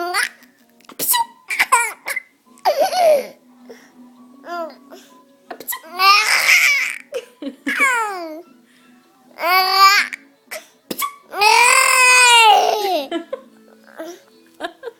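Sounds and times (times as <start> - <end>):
baby laughing and squealing: 5.7 - 7.0.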